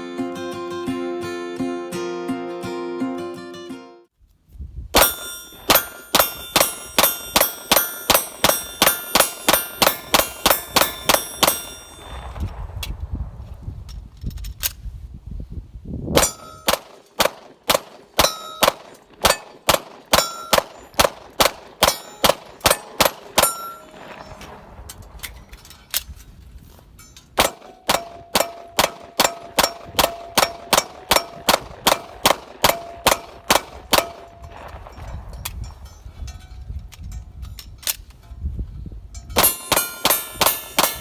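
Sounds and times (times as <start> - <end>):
pistol shots: 5.0 - 12.0, 16.2 - 25.2, 27.4 - 34.8, 39.4 - 41.0
steel targets ringing: 5.0 - 12.4, 16.2 - 17.2, 18.2 - 26.0, 27.0 - 37.2, 39.1 - 41.0.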